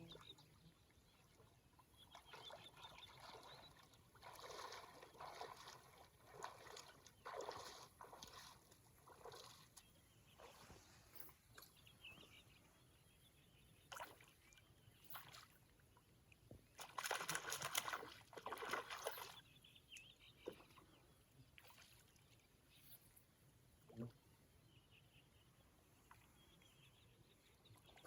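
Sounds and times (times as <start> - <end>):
water splashing and sloshing: 0.0 - 12.4, 13.9 - 19.5, 20.3 - 23.1.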